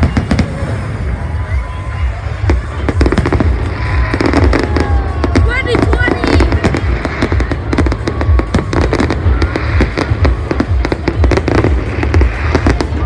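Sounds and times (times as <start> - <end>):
fireworks cracking and banging: 0.0 - 13.0.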